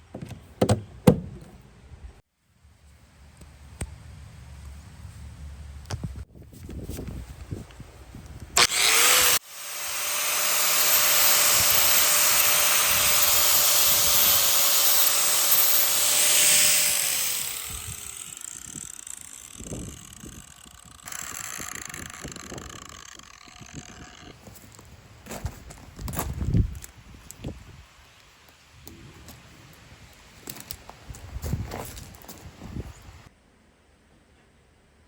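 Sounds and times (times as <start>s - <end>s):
power tool motor whining: 8.6s - 24.4s.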